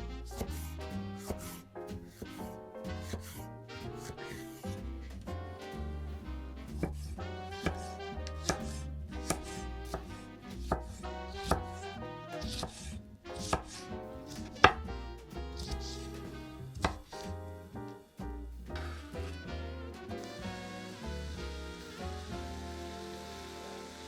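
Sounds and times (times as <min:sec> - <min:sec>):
background music: 0:00.0 - 0:24.0
knife chopping on cutting board: 0:00.3 - 0:04.9, 0:06.7 - 0:15.0, 0:15.6 - 0:17.5.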